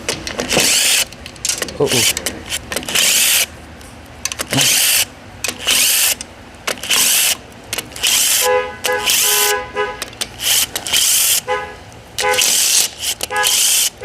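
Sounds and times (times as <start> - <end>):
impact tool whirring bursts: 0.4 - 1.1, 1.8 - 3.5, 4.3 - 9.6, 10.3 - 11.4, 12.2 - 14.0.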